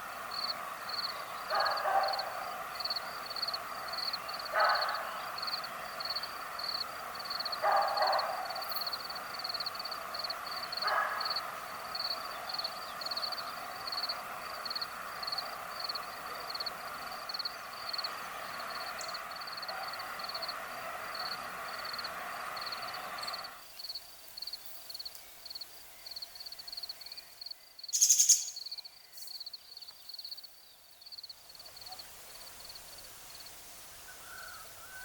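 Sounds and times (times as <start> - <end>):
high-pitched pulsing chirp: 27.4 - 29.4.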